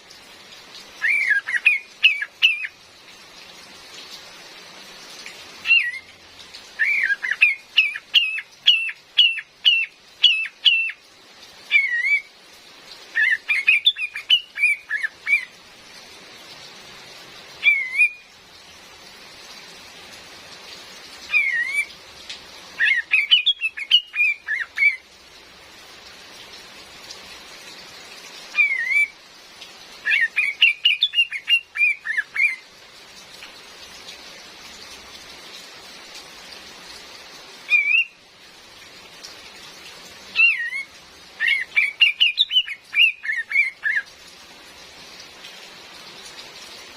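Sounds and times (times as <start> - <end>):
rain hiss: 0.0 - 46.9
bird chirping: 1.0 - 2.8, 5.6 - 6.2, 6.8 - 11.0, 11.7 - 12.3, 13.1 - 15.5, 17.6 - 18.3, 22.8 - 25.1, 28.5 - 29.2, 30.0 - 32.6, 40.4 - 44.1.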